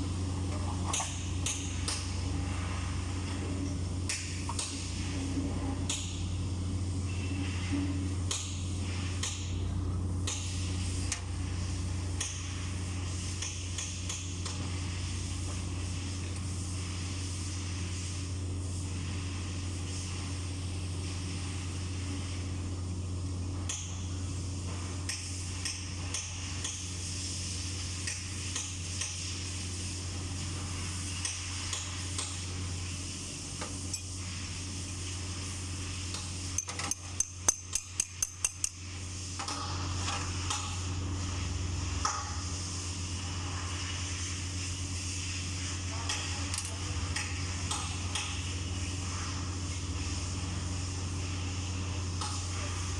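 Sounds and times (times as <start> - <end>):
hammer striking metal: 36.6 - 38.8
light clinks and taps on metal: 36.6 - 38.8.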